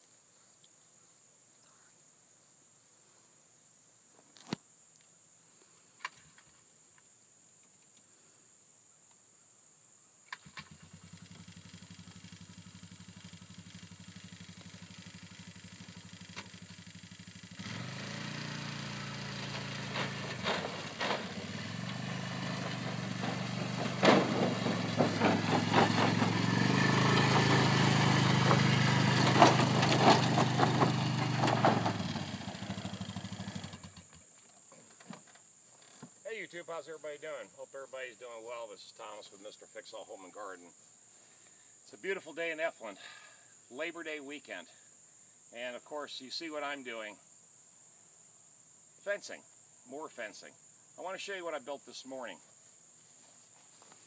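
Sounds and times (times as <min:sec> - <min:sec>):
engine running: 0:10.4 - 0:34.2
sharp knocks and rattles: 0:18.8 - 0:36.2.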